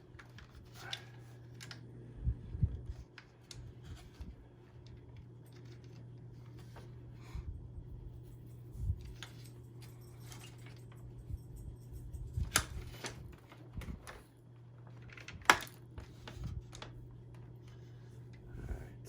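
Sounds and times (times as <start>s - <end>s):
low steady hum: 0.0s - 19.0s
plastic parts clicking and knocking: 14.9s - 16.9s.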